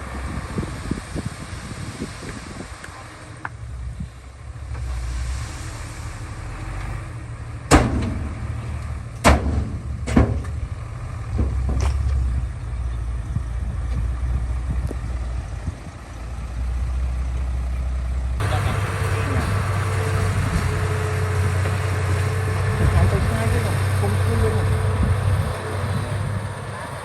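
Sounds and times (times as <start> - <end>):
diesel engine rumbling: 0.0 - 27.0
loud sharp metal clangs: 7.7 - 10.7.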